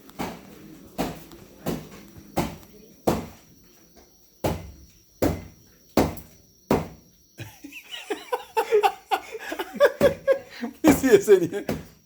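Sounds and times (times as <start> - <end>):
voices: 7.4 - 11.8
pestle pounding in mortar: 9.9 - 12.0.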